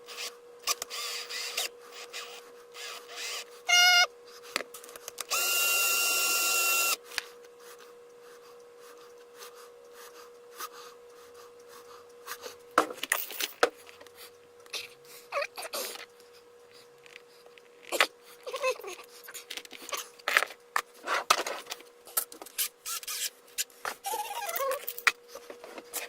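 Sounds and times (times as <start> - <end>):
small electric tool whining: 0.0 - 4.1, 5.2 - 7.0
electrical hum: 0.0 - 26.0.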